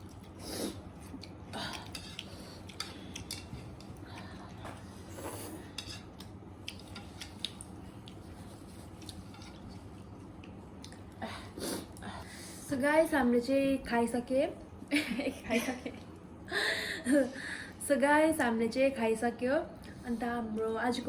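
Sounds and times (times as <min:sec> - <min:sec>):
chewing and mouth sounds: 0:00.0 - 0:11.2.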